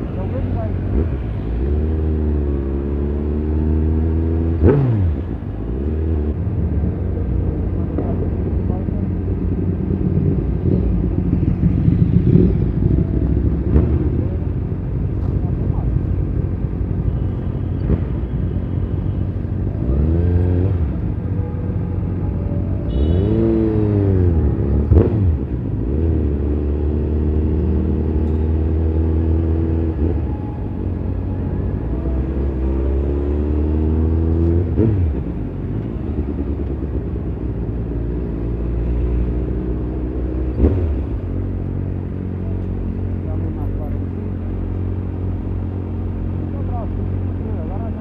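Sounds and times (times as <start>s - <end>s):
vehicle engine revving: 0.8s - 6.4s, 10.0s - 14.4s, 19.7s - 21.2s, 23.0s - 30.6s, 32.0s - 36.9s, 37.7s - 43.6s.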